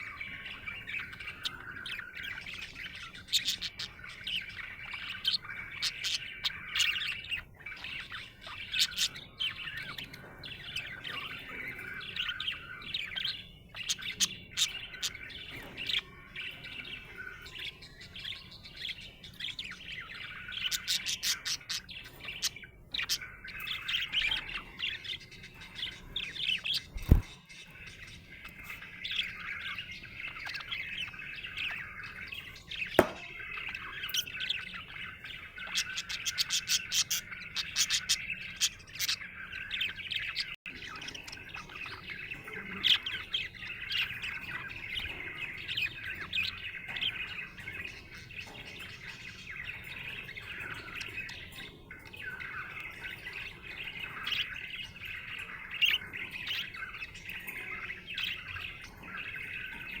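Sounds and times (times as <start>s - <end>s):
budgerigar chirping and warbling: 0.0s - 60.0s.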